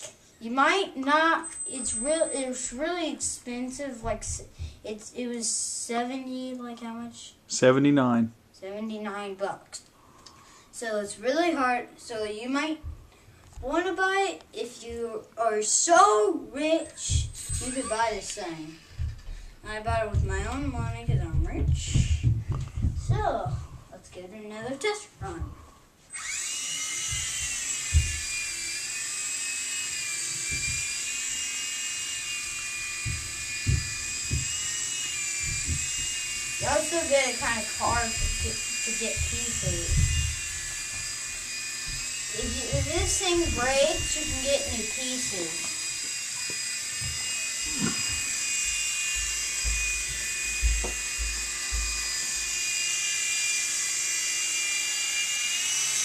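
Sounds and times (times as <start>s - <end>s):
toy helicopter rotors whining: 1.4s - 4.6s, 16.0s - 23.8s, 26.1s - 56.0s
low thumps: 12.8s - 13.8s, 17.0s - 24.1s, 25.2s - 25.7s, 27.0s - 28.8s, 30.4s - 31.1s, 32.2s - 45.7s, 46.5s - 52.4s.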